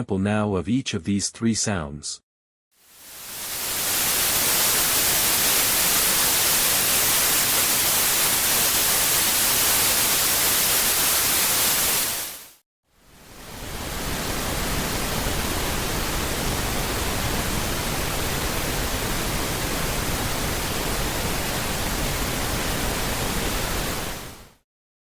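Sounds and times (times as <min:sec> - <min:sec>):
pink noise hiss: 0:02.9 - 0:24.5.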